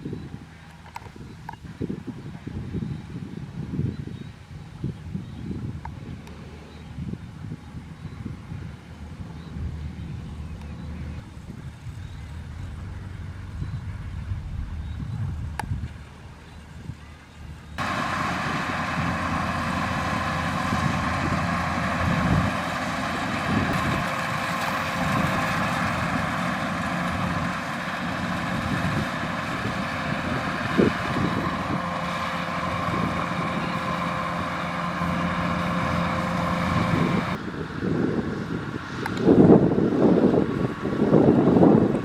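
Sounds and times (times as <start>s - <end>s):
combine harvester engine running: 6.0s - 37.6s.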